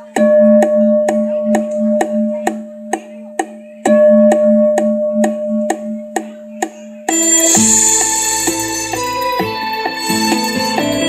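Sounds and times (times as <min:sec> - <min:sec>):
instrumental music: 0:00.0 - 0:11.0
temple bell ringing: 0:07.1 - 0:11.0.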